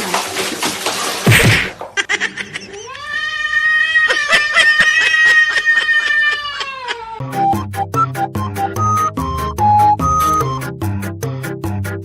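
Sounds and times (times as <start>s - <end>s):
cat yowling: 2.8s - 7.2s.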